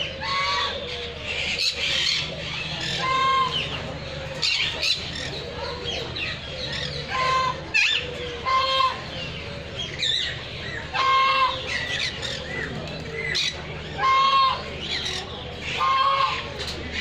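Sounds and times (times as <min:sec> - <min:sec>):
loud harsh bird squawk: 0:00.0 - 0:03.8, 0:05.9 - 0:09.3, 0:10.0 - 0:12.5, 0:13.3 - 0:16.6.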